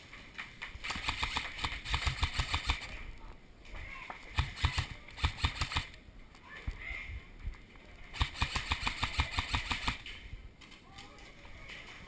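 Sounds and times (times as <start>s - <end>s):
airsoft gun rapid firing: 0.8s - 3.0s, 4.3s - 6.0s, 8.2s - 10.1s.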